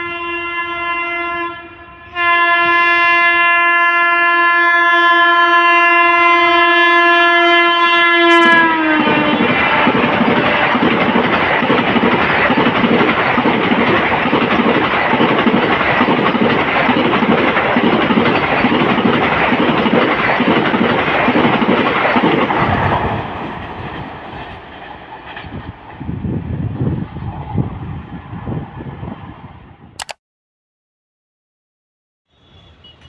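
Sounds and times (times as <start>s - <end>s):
train wheels clattering: 8.5s - 25.6s.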